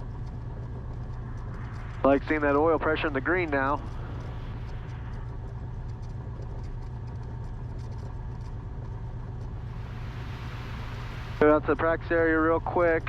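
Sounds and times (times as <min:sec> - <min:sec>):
aircraft engine and propeller running: 0:00.0 - 0:13.0.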